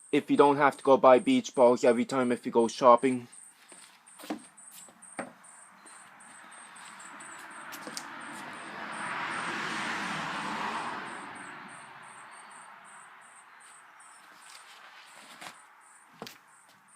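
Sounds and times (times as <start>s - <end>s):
insects chirping: 0.0s - 16.9s
vehicle passing by: 5.6s - 15.9s.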